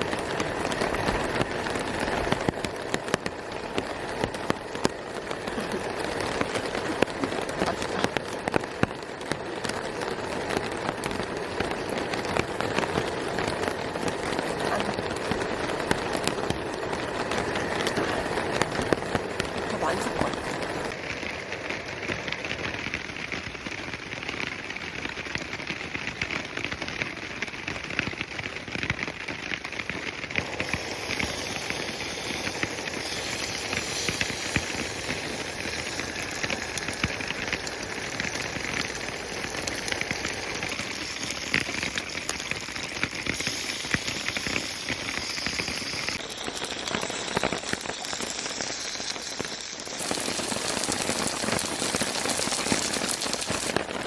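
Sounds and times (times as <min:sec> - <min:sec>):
pork sizzling in a pan: 0:20.9 - 0:53.8.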